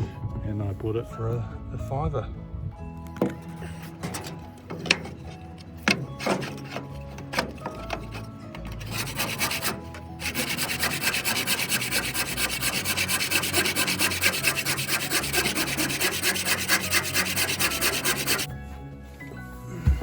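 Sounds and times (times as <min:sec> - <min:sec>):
abrasive rubbing on wood: 0:03.3 - 0:18.5.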